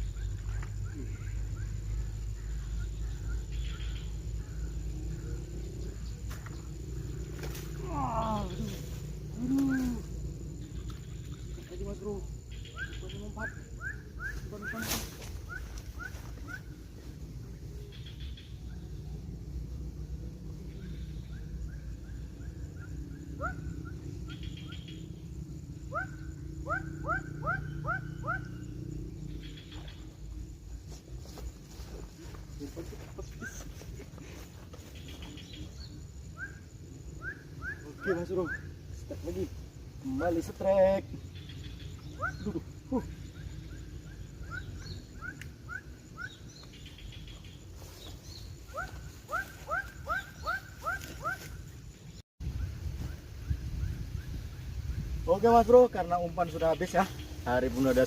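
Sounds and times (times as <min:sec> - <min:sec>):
rapid bird chirping: 0:00.0 - 0:58.0
steady low rumble: 0:00.0 - 0:58.0
low rumble: 0:14.0 - 0:37.9
animal chirping: 0:25.8 - 0:30.1, 0:34.9 - 0:39.0, 0:41.2 - 0:47.6, 0:48.4 - 0:51.6
bird calling rising notes: 0:34.8 - 0:39.1.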